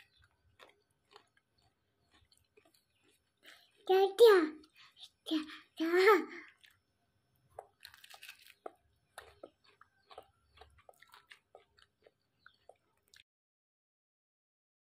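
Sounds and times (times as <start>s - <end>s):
chewing and crunching food: 0.0s - 13.3s.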